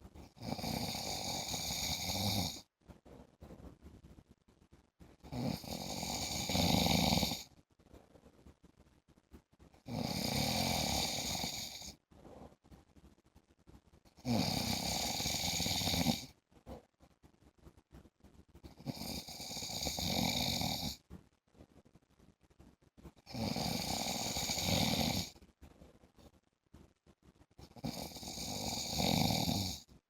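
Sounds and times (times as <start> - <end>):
man snoring: 0.4 - 2.6, 5.3 - 7.4, 9.9 - 12.0, 14.2 - 16.3, 18.8 - 21.0, 23.3 - 25.3, 27.7 - 29.9.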